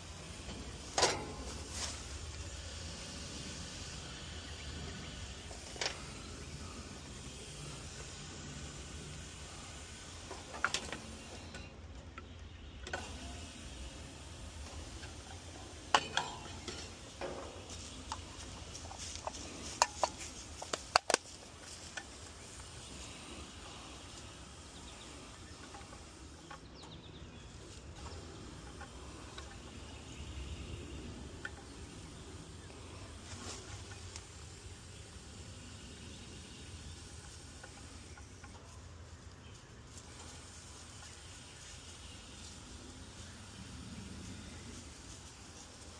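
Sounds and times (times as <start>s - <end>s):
steady low hum: 0.0s - 45.9s
sharp clicks and knocks: 14.6s - 22.7s.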